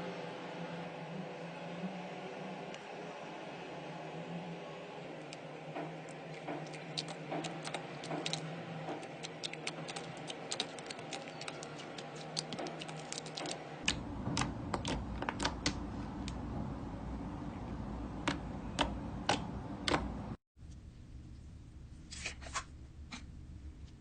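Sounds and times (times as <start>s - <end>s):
slime clicking and popping: 6.6s - 8.4s, 9.0s - 15.8s
low rumble: 13.9s - 20.4s.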